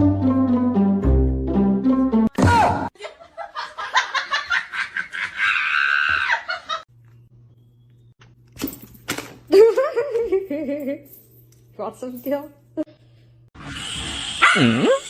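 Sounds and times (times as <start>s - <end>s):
person laughing: 9.5s - 11.1s.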